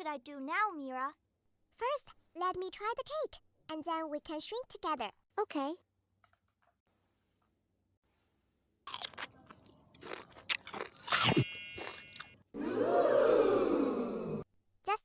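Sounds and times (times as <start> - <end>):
crunchy chewing: 8.9 - 12.4
high ringing chime: 11.0 - 12.2.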